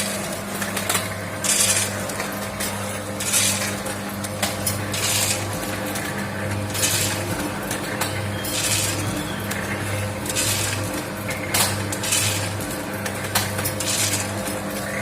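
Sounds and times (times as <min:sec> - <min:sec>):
machine motor hum: 0:00.0 - 0:15.0
snack pellets clinking and clattering: 0:08.1 - 0:15.0.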